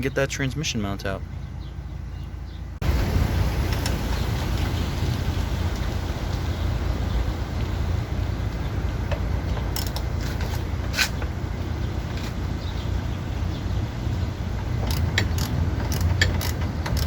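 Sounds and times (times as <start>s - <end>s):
low rumbling background noise: 0.0s - 17.0s
sharp clicks: 14.8s - 17.0s.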